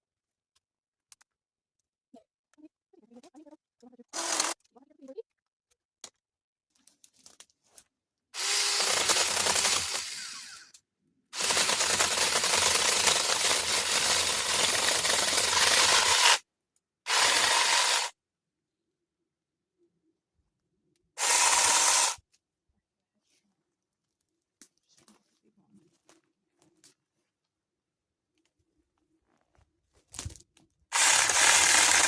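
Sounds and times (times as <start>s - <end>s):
battery cutting tool running: 4.2s - 4.6s, 8.4s - 10.7s, 11.4s - 16.4s, 17.1s - 18.2s, 21.2s - 22.2s, 30.9s - 32.0s.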